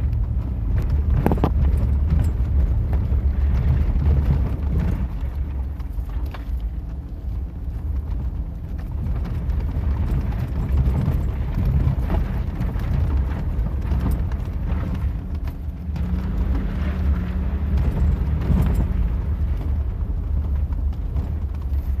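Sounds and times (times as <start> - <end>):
atv engine rumbling: 0.0 - 22.0
knocks and rattles over bumps: 0.0 - 22.0.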